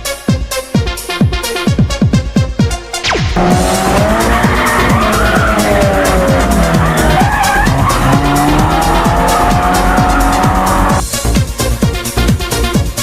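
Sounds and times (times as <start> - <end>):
tyres squealing: 3.4 - 11.0
car engine running hard: 3.4 - 11.1.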